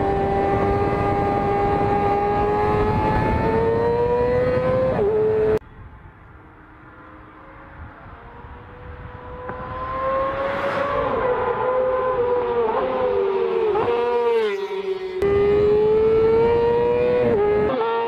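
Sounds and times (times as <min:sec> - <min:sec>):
motorcycle engine whining at high revs: 0:00.0 - 0:05.6, 0:11.1 - 0:18.0.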